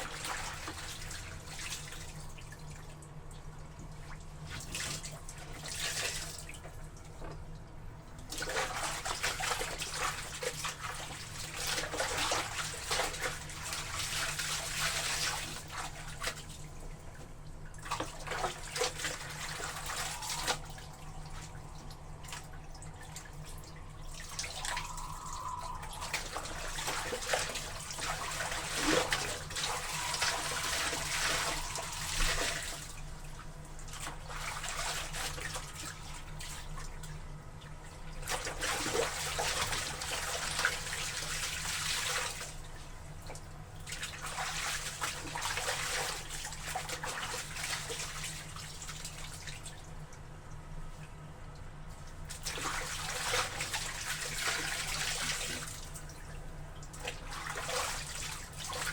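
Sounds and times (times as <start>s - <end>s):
steady low hum: 0.0s - 41.6s
water sloshing in a tub: 0.0s - 58.9s.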